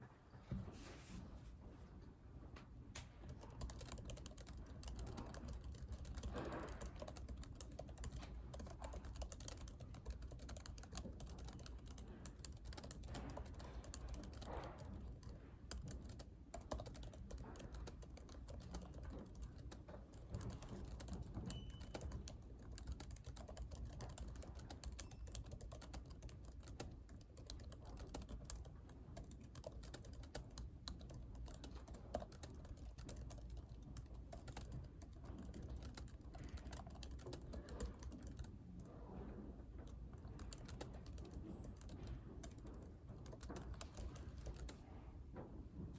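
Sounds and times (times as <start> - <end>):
low room hum: 0.0 - 45.9
typing on laptop keyboard: 3.2 - 38.6, 39.8 - 44.8.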